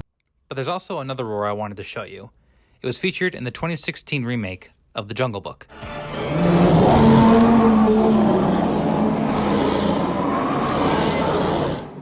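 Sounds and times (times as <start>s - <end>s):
rough raspy creature roar: 5.8s - 12.0s.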